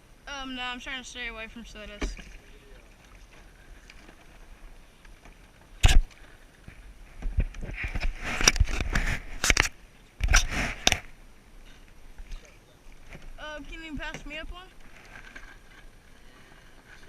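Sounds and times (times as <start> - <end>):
rustling: 0.8 - 17.0
water splashing: 1.3 - 6.7.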